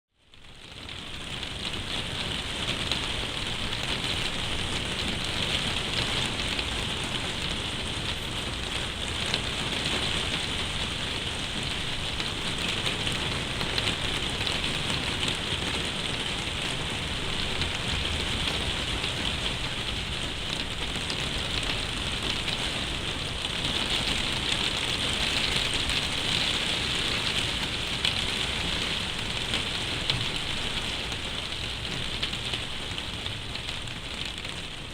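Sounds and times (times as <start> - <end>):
heavy rain on a plastic roof: 0.1 - 34.9.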